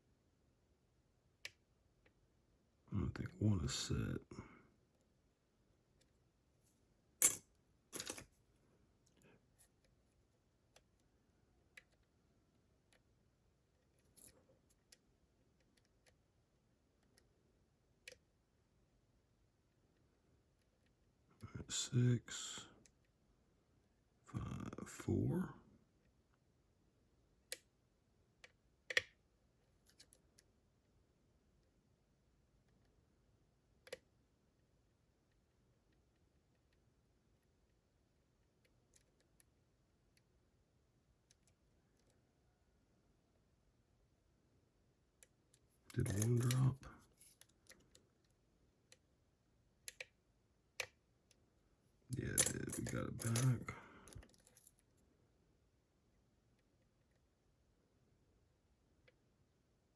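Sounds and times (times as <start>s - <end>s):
faint ticks of lock pins: 28.4s - 29.2s, 33.8s - 34.1s, 45.2s - 49.0s, 49.8s - 50.2s, 52.1s - 54.9s.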